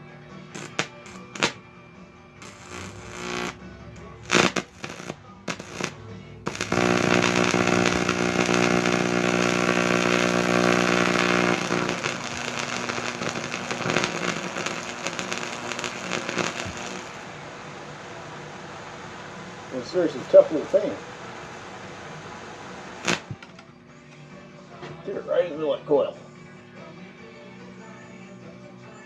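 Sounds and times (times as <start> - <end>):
electrical arc buzzing and crackling: 0.5 - 1.7, 2.4 - 23.6
electrical arc cracks: 0.5 - 1.7, 2.4 - 23.6.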